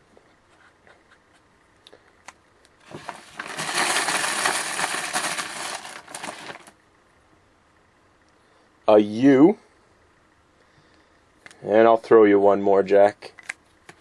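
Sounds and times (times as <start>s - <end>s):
letter pieces rattling: 2.9s - 6.7s.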